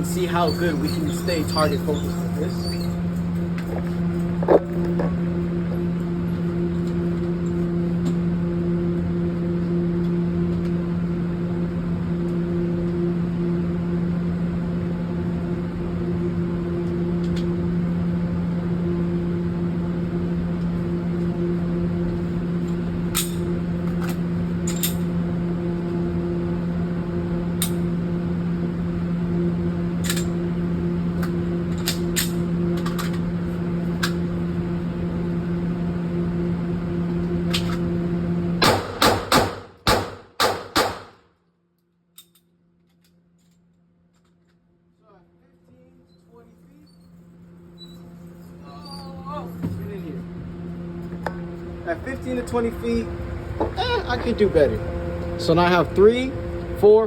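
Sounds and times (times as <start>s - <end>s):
steady mechanical hum: 0.0s - 57.0s
rapid pistol shots: 38.6s - 41.2s.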